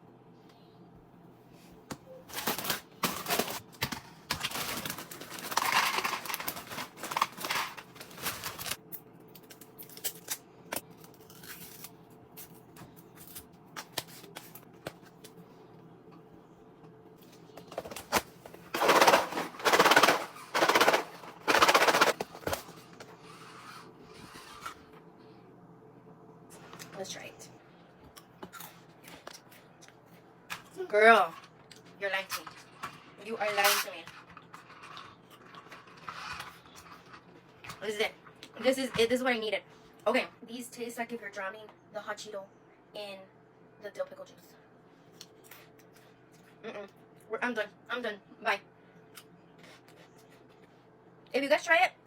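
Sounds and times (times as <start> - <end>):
plastic bag crinkling: 2.3 - 8.8, 17.8 - 22.7.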